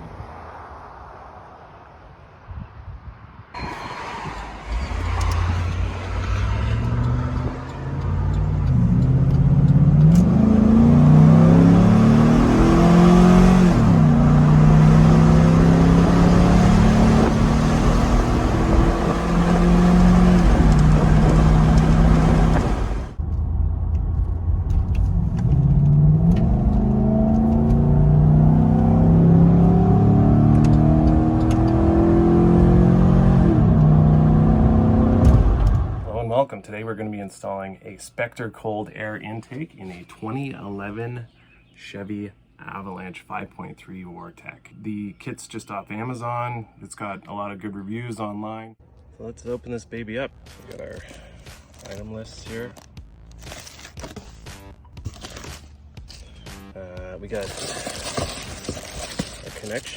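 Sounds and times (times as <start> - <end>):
car engine accelerating: 3.6 - 36.1.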